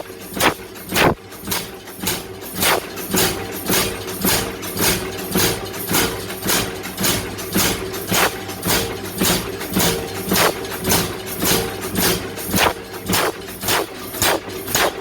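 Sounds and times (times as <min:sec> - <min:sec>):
machine hum: 0:10.3 - 0:10.7, 0:12.5 - 0:15.0.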